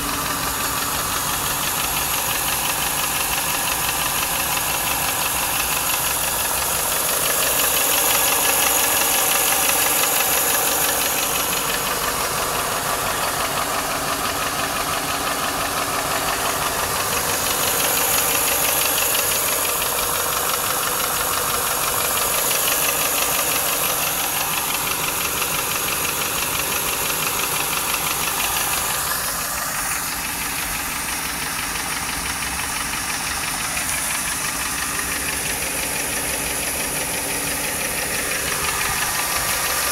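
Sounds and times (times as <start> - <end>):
car engine running: 0.0 - 39.9
engine tapping knock: 0.0 - 39.9.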